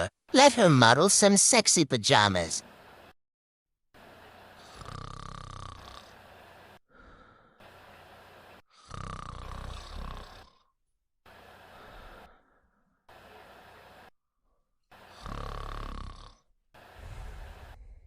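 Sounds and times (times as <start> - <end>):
woman snoring: 4.5 - 6.3, 8.6 - 10.8, 14.9 - 16.5
soft breath: 6.1 - 8.6, 11.3 - 14.1, 16.8 - 18.0.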